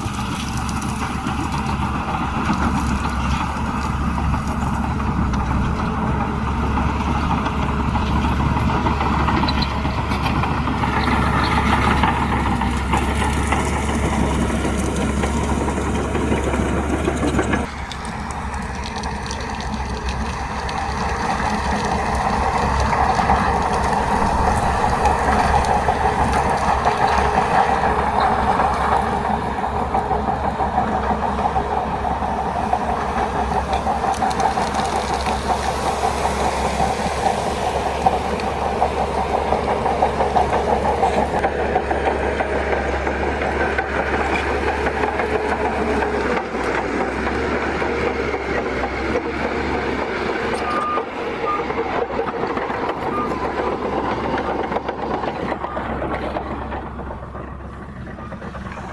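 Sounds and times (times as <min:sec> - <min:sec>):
bulldozer diesel engine running: 0:00.0 - 0:58.9.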